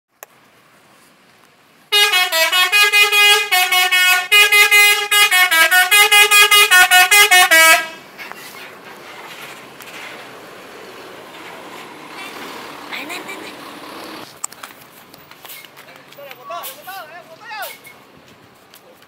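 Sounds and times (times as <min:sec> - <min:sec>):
bus musical horn tune: 0:01.9 - 0:08.1.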